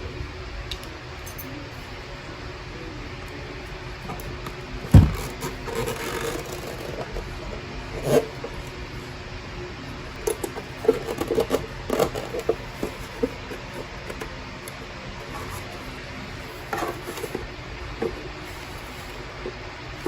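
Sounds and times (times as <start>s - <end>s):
steady background hum: 0.0s - 20.0s
light plastic scraping: 4.9s - 8.8s, 10.1s - 20.0s.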